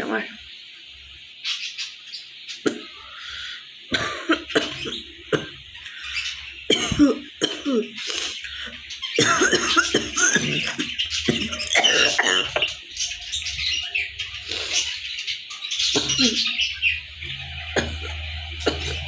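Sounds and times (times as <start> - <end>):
woman coughing: 3.9 - 5.5, 6.7 - 8.0, 9.2 - 10.9.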